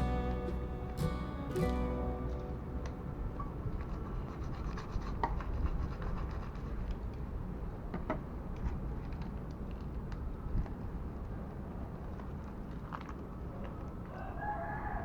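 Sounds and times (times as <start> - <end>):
steady low hiss: 0.0 - 5.0.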